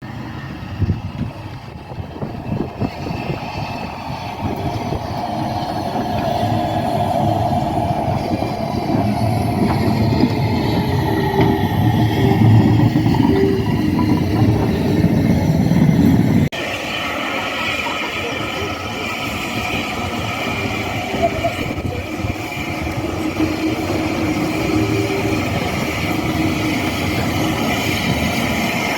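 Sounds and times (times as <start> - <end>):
steam train rumbling: 0.0 - 28.9.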